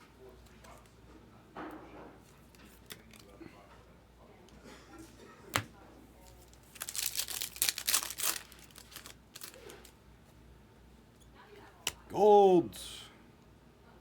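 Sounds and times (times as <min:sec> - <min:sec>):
foil wrapper tearing and crinkling: 0:06.4 - 0:10.0.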